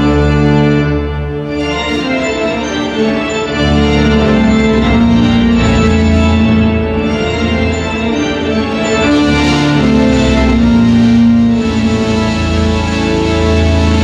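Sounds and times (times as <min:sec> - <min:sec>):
organ-like chords: 0:00.0 - 0:14.0
deep bass line: 0:04.1 - 0:12.1.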